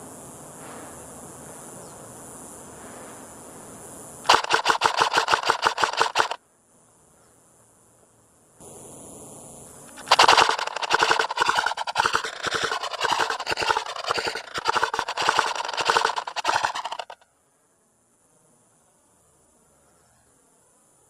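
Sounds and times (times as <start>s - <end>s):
rapid sharp reports: 4.3s - 6.4s, 9.9s - 17.2s.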